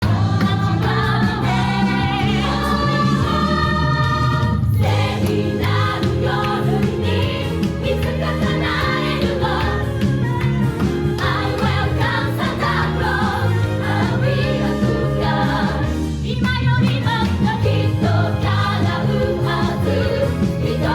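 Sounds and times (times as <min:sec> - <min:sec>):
band accompaniment: 0:00.0 - 0:16.3
female ensemble singing in chorus: 0:00.0 - 0:20.9.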